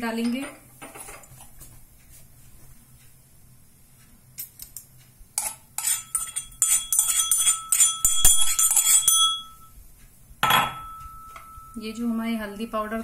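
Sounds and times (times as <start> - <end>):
metal spoon scraping metal vessel: 5.4 - 9.6.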